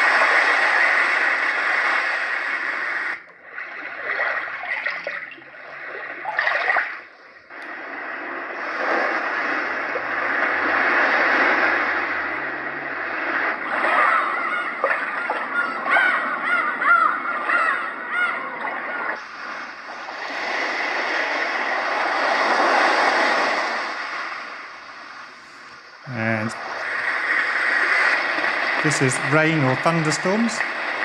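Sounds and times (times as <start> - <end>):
running water: 0.0 - 7.7, 13.5 - 31.0
sea waves from small speaker: 0.0 - 31.0
chirping calls: 13.8 - 19.2.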